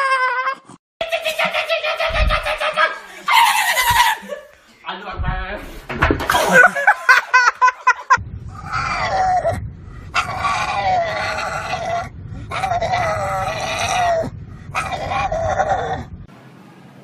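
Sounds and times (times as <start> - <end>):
animal drawn-out cries: 0.0 - 4.4, 8.6 - 16.2.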